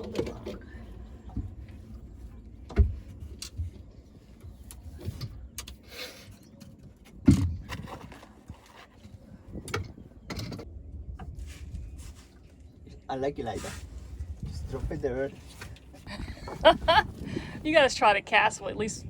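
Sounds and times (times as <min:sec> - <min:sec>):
knocks and bumps on boat: 0:07.1 - 0:08.1
low rumbling: 0:16.0 - 0:19.0.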